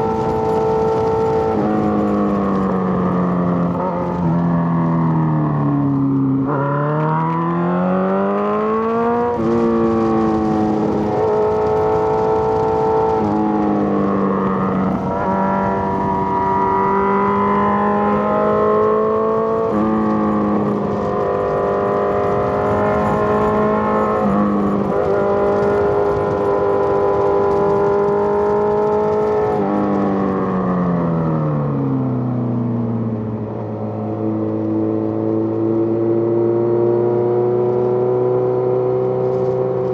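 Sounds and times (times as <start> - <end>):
motorcycle engine revving: 0.0 - 32.2, 33.0 - 39.9.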